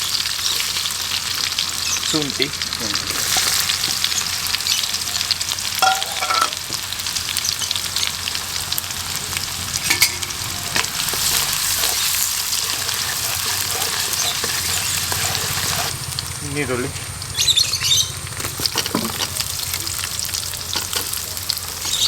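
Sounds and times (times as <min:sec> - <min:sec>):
garlic sizzling in hot oil: 0:00.0 - 0:22.0
spoon stirring and scraping: 0:03.0 - 0:04.1, 0:09.9 - 0:16.0, 0:18.4 - 0:22.0.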